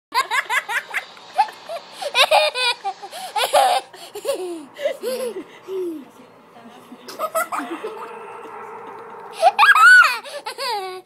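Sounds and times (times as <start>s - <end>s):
small child giggling: 0.2s - 6.0s, 9.4s - 11.0s.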